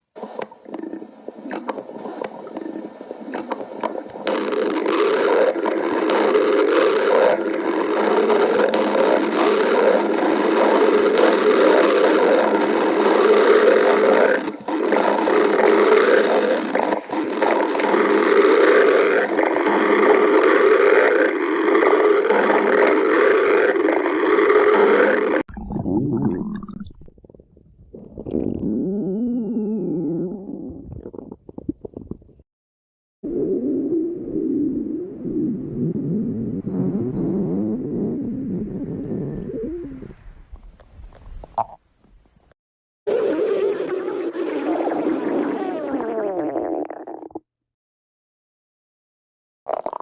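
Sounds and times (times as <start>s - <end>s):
stomach growling: 0.1s - 32.4s, 33.3s - 41.8s, 43.1s - 47.5s, 49.7s - 50.0s.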